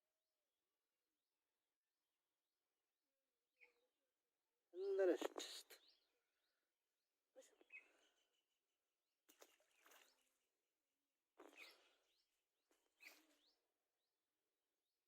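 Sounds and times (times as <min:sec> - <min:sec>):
faint bird chirps: 0:03.6 - 0:04.0, 0:07.4 - 0:08.6, 0:09.3 - 0:10.4, 0:11.4 - 0:13.8.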